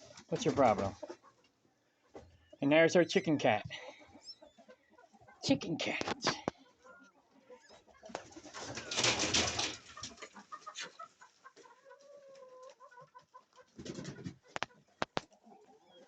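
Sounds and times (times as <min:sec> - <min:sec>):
hens clucking softly: 0:00.0 - 0:16.0.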